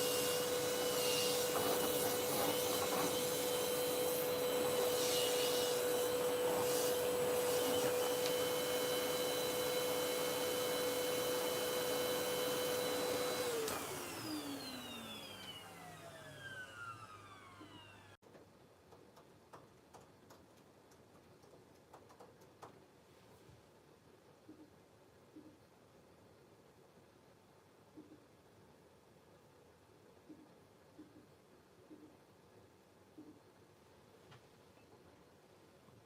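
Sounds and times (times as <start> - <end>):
motor winding down whine: 0.0 - 18.2
vacuum cleaner running: 0.0 - 18.2
faint small clicks and taps: 18.2 - 22.8.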